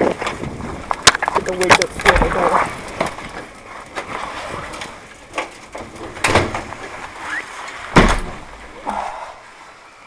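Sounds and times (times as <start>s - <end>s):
knocks and rattles: 0.0s - 7.0s, 7.9s - 8.5s
door opening and shutting: 4.8s - 6.7s, 7.9s - 8.6s
heavy door thud: 6.2s - 6.7s, 7.9s - 8.6s.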